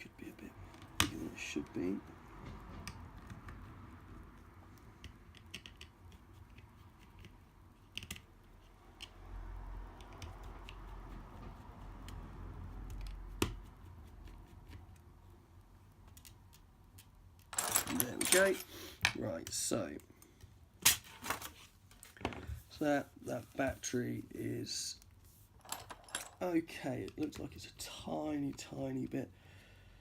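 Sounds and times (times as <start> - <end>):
small hand tools clicking and tapping: 4.3 - 8.3, 9.9 - 10.9.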